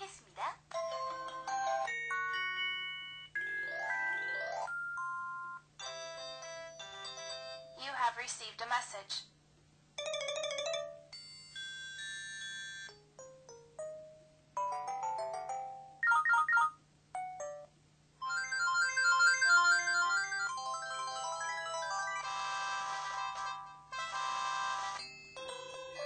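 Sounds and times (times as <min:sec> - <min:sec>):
ringtone melody: 0:00.8 - 0:07.8, 0:10.0 - 0:26.0
phone alert jingles and chimes: 0:14.6 - 0:22.5.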